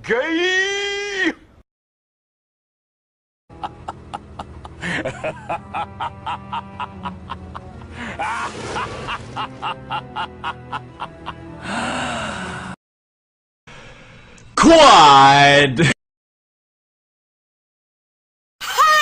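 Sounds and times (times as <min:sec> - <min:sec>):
sinister laugh: 0:03.5 - 0:11.5
low musical drone: 0:03.5 - 0:12.8.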